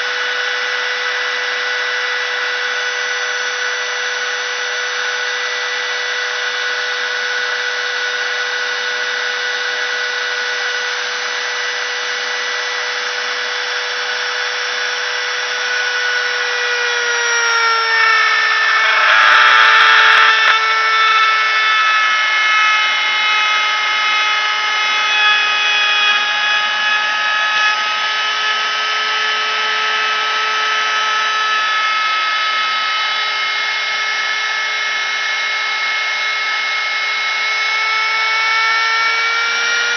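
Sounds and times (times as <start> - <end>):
router spindle whining: 0.0 - 39.9
rough cutting noise: 15.4 - 27.9.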